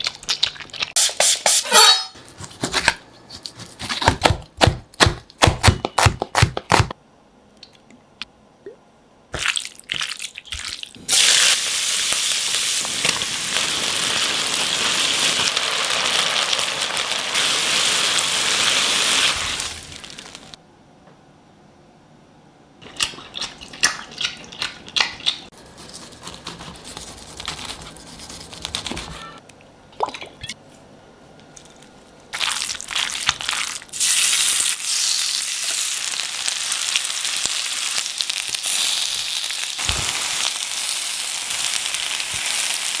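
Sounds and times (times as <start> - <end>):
food sizzling in oil: 11.1 - 20.6, 32.4 - 43.0.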